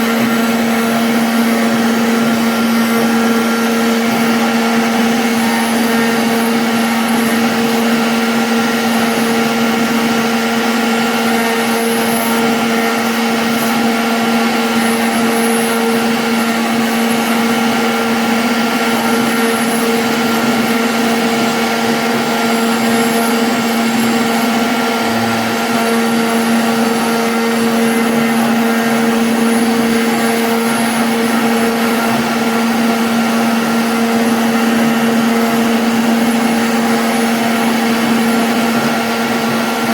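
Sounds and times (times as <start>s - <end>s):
router spindle hum and whine: 0.0s - 39.9s
dense rushing noise: 24.3s - 27.7s.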